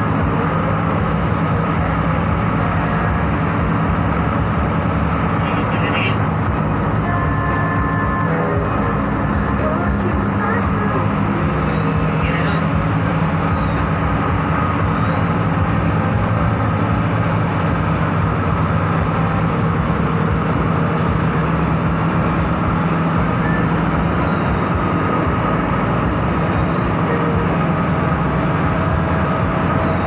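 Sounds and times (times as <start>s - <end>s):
bus engine running: 0.0s - 30.0s
road and tyre noise: 0.0s - 30.0s.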